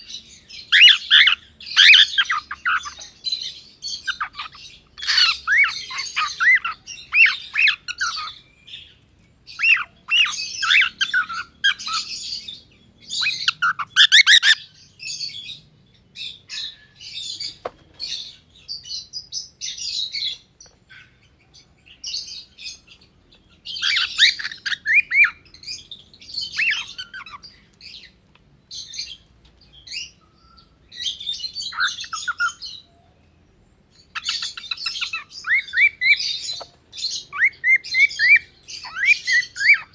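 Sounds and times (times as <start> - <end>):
cockatiel chirping and whistling: 0.7 - 3.0, 13.2 - 14.6, 23.8 - 25.4, 34.1 - 36.7, 37.3 - 39.9.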